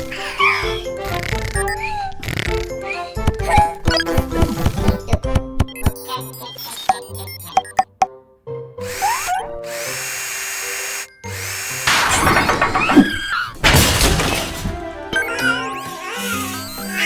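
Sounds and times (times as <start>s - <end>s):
cartoon music: 0.1s - 8.1s, 11.2s - 17.0s
steady mechanical whirr: 8.8s - 13.6s
clattering drilling and crashing: 8.9s - 17.0s.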